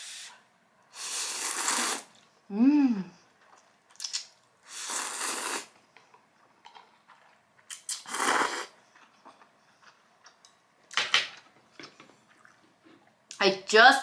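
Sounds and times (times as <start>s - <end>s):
person slurping noodles: 0.9s - 2.1s, 4.7s - 5.8s, 7.7s - 8.8s.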